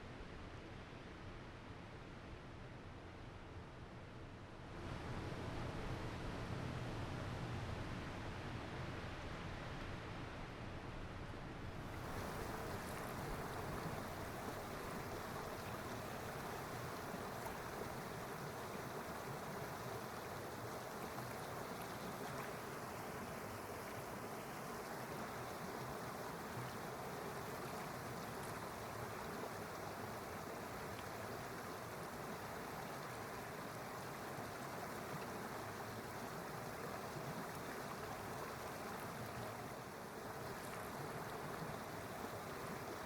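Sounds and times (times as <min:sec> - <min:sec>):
flowing water rushing: 0:11.9 - 0:43.0.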